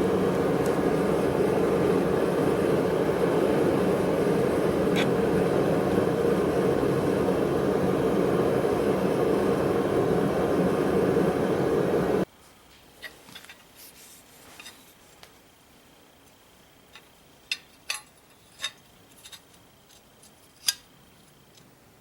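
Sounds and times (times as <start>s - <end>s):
forge roaring: 0.0s - 12.2s.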